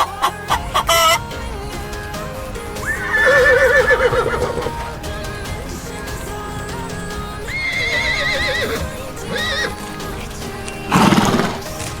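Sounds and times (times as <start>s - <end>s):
background music: 0.0s - 12.0s
horse whinnying: 2.9s - 4.8s, 7.5s - 9.8s.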